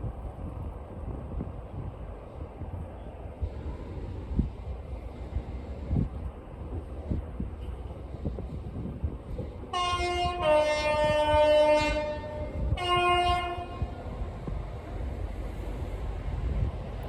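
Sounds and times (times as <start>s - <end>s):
train rumbling: 0.0s - 17.0s
train two-tone horn: 9.7s - 14.0s.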